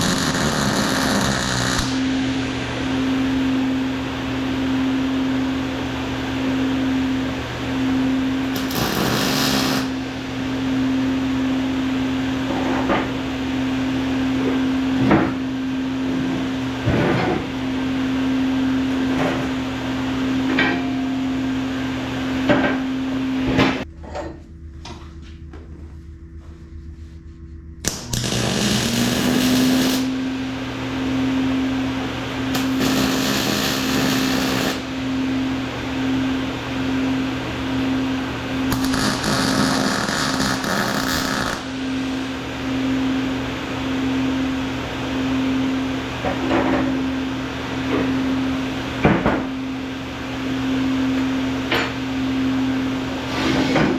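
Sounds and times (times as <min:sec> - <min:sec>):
electric motor hum: 0:00.0 - 0:05.5, 0:27.8 - 0:43.4.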